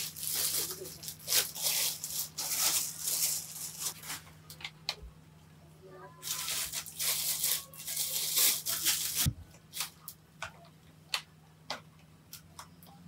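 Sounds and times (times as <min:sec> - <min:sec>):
packaging rustling and crinkling: 0:00.0 - 0:04.3, 0:06.2 - 0:09.9.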